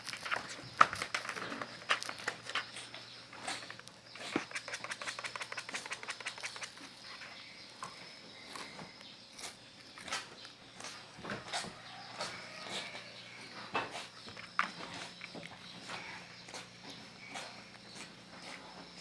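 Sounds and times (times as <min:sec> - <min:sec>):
cat scratching cardboard: 0:00.0 - 0:07.0.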